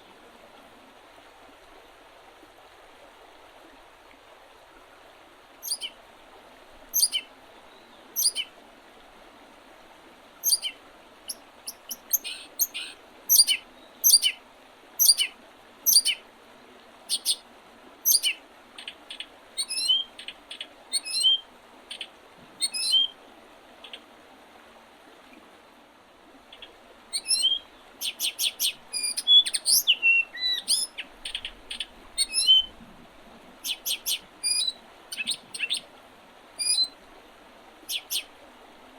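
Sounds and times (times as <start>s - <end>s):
river water rushing: 0.0s - 38.9s
songbirds chirping: 5.6s - 6.0s, 6.8s - 8.5s, 10.4s - 14.4s, 15.0s - 16.2s, 26.5s - 32.8s, 33.6s - 35.9s, 37.9s - 38.3s.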